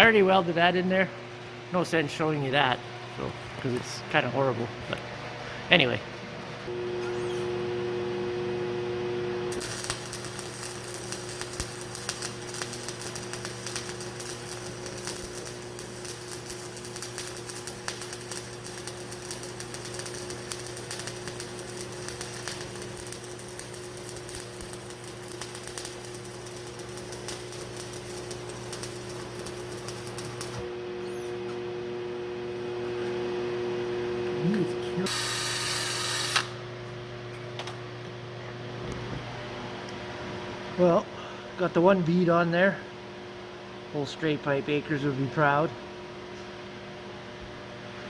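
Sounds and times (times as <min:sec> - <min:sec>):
steady hum: 0:00.0 - 0:48.0
arc welding crackle: 0:09.5 - 0:31.4, 0:34.4 - 0:36.6.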